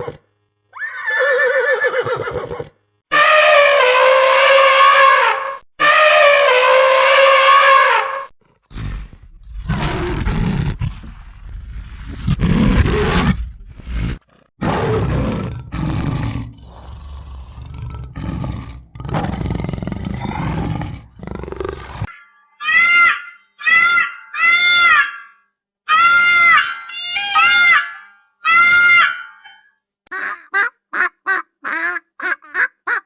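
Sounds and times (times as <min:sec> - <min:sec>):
animal long pitched call: 0:00.8 - 0:08.0
big cat roaring and growling: 0:08.4 - 0:22.1.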